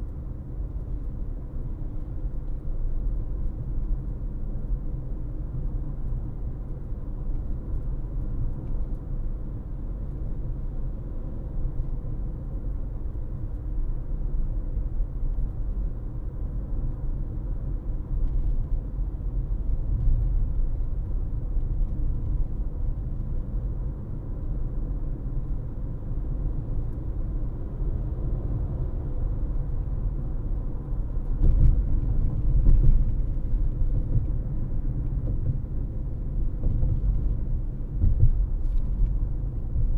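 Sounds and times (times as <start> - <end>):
car driving rumble: 14.5 - 39.9.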